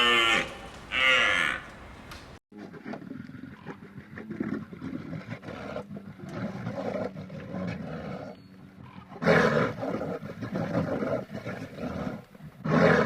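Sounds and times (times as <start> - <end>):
big cat roaring: 2.8 - 13.0.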